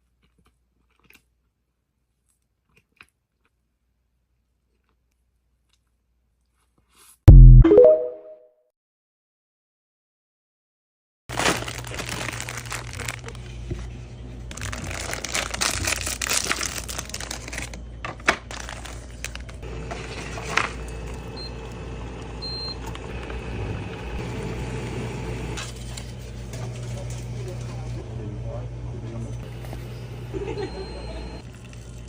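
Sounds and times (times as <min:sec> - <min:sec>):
plastic packaging crinkling: 0:11.3 - 0:13.8, 0:14.5 - 0:19.6.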